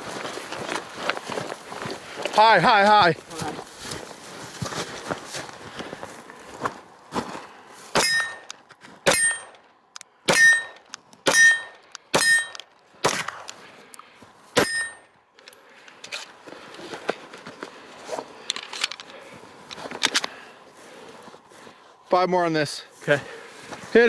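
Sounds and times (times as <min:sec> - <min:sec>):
metallic ring of steel target: 0:08.0 - 0:08.5, 0:09.1 - 0:09.6, 0:10.3 - 0:13.2, 0:14.6 - 0:15.1.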